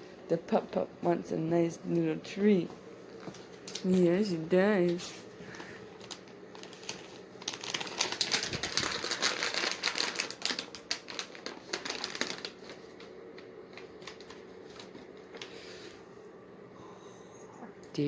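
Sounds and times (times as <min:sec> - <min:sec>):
treat package crinkling: 0:03.2 - 0:04.1, 0:04.9 - 0:15.7.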